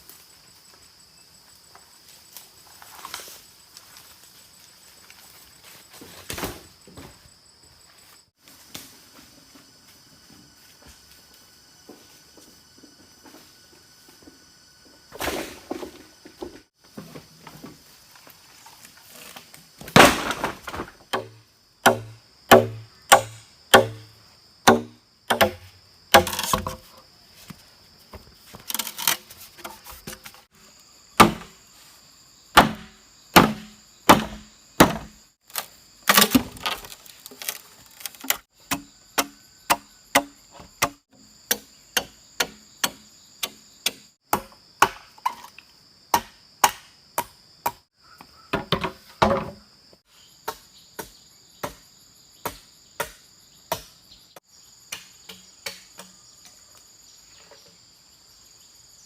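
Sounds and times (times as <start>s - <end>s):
blade chopping strikes: 24.7s - 25.6s, 32.6s - 35.2s.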